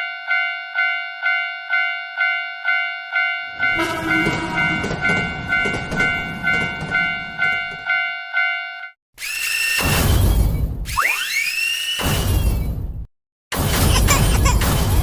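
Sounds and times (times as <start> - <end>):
railroad crossing bell ringing: 0.0 - 9.0
train rumbling past: 3.6 - 8.0.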